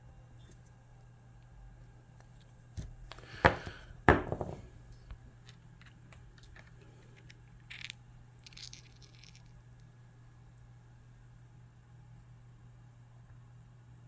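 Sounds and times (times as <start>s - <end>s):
stone clacking on hard surface: 3.4s - 4.7s.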